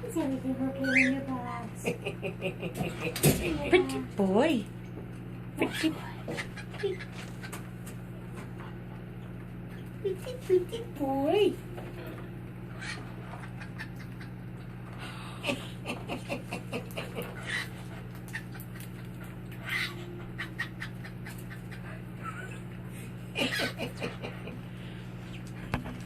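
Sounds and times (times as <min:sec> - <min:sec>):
cockatiel mimicking laughter: 0:15.4 - 0:18.6, 0:19.6 - 0:24.6.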